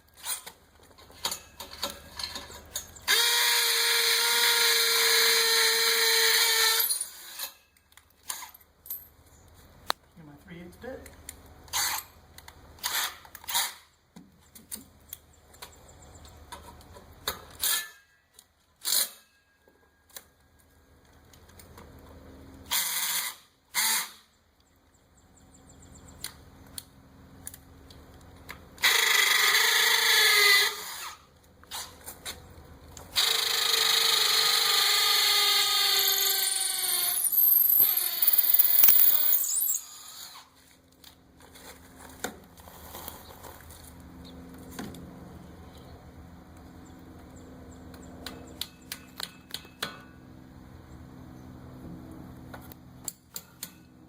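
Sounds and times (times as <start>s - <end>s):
power drill drilling: 33.2s - 40.4s.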